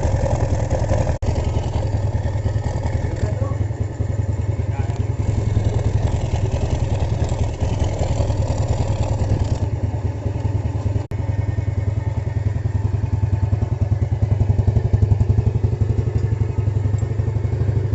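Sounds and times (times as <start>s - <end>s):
motorcycle engine idling: 0.0s - 17.9s.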